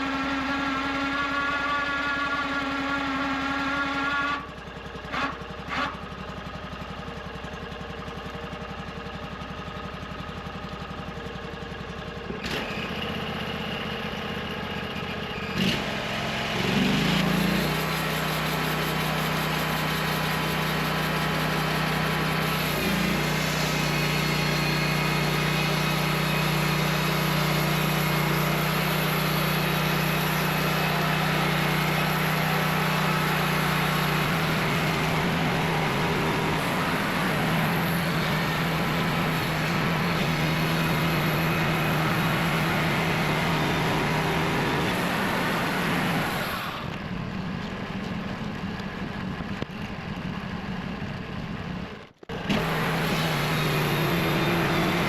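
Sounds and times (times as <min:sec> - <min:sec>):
small gasoline engine running: 0:00.0 - 0:55.0.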